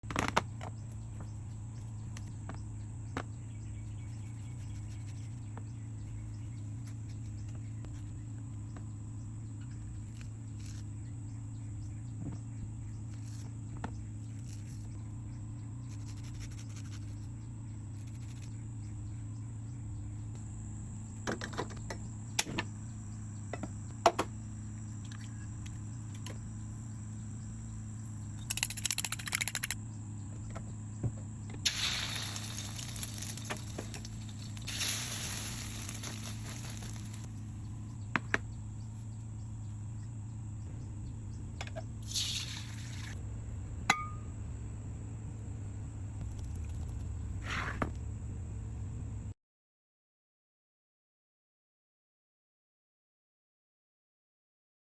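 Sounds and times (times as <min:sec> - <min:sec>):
steady low hum: 0:00.1 - 0:49.4
high-pitched insect chirring: 0:15.8 - 0:19.2, 0:22.0 - 0:30.3, 0:31.6 - 0:37.3
scattered clicks: 0:28.4 - 0:29.8.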